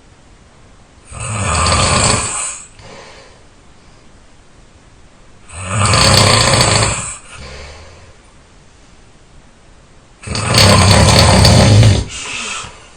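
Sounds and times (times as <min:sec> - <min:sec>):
person snoring loudly: 0:01.1 - 0:03.0, 0:05.5 - 0:08.1, 0:10.2 - 0:12.8
faint breath: 0:02.5 - 0:04.2, 0:07.1 - 0:08.3, 0:12.1 - 0:12.9.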